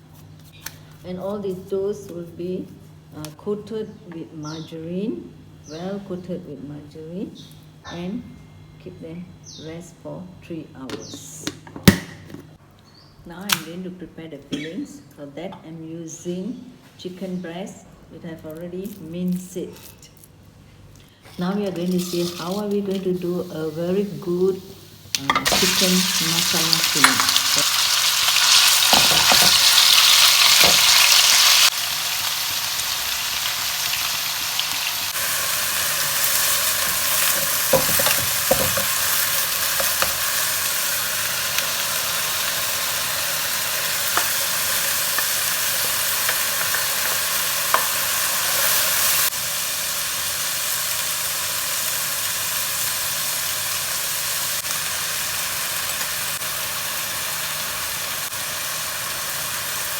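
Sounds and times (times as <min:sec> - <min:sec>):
food sizzling in a pan: 0:21.8 - 0:59.9.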